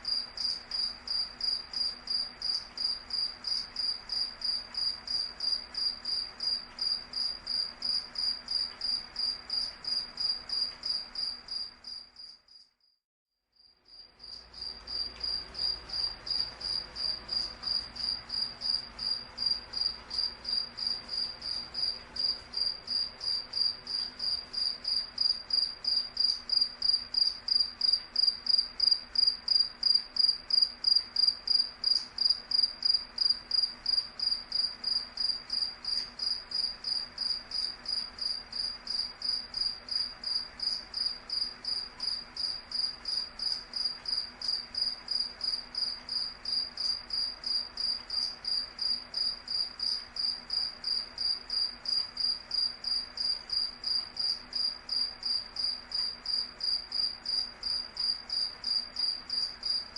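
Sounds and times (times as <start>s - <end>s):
cricket chirping: 0.0s - 13.0s, 13.6s - 59.9s.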